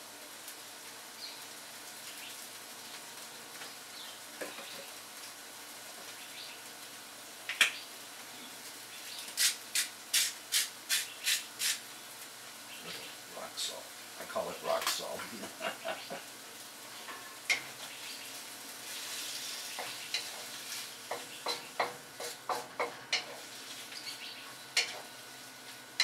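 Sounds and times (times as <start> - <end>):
faint steady hiss: 0.0 - 26.0
salt grinder crunching: 9.4 - 11.8.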